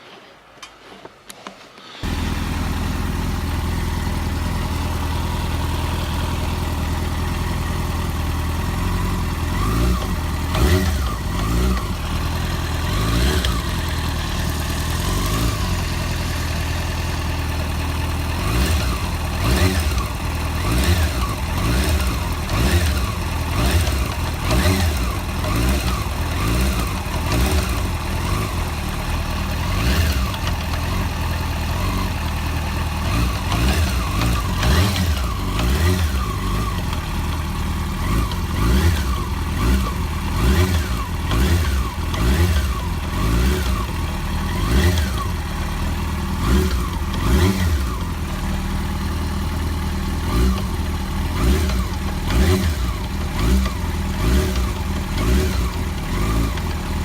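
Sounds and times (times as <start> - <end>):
motorcycle engine revving: 2.0 - 57.0
clutch knock: 9.9 - 14.6, 33.1 - 37.4, 50.5 - 57.0.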